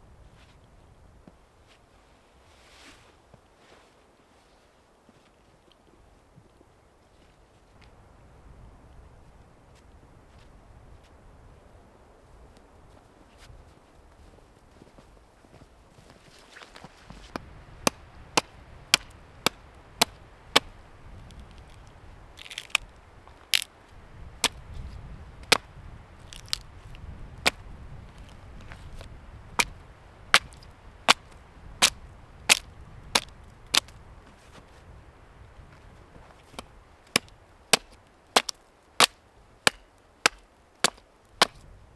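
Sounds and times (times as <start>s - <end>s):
low wind rumble: 16.9s - 37.8s
axe chopping wood: 17.2s - 22.9s, 24.4s - 24.7s, 25.4s - 33.9s, 36.5s - 41.7s.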